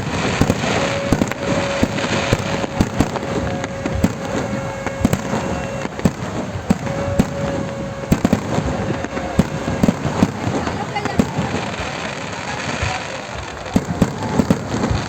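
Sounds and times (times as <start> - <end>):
steady whistling tone: 0.0 - 11.6
fireworks cracking and banging: 0.0 - 15.0
noisy background: 0.0 - 15.0.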